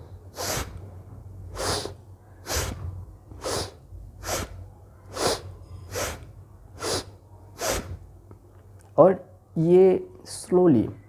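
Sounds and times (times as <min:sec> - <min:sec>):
forceful breaths through the nose: 0:00.0 - 0:08.2.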